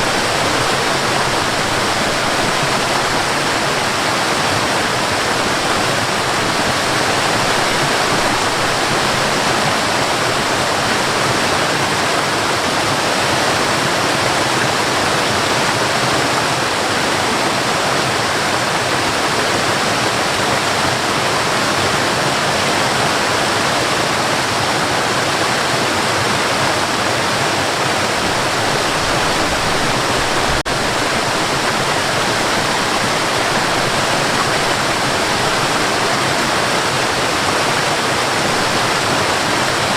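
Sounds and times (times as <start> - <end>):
waterfall pouring: 0.0 - 12.0, 27.2 - 39.9.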